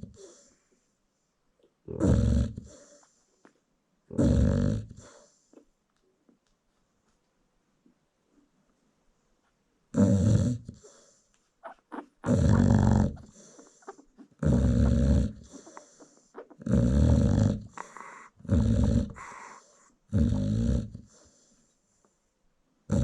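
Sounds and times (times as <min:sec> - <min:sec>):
dog snoring: 0:01.9 - 0:03.0, 0:04.1 - 0:05.3, 0:09.9 - 0:21.4
faint breathing: 0:02.6 - 0:03.7, 0:10.7 - 0:16.6, 0:17.4 - 0:22.3.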